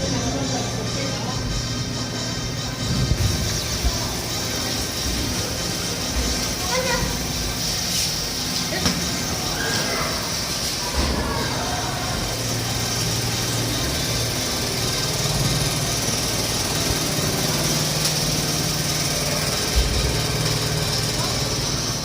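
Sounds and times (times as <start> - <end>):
small engine humming: 0.0 - 22.0.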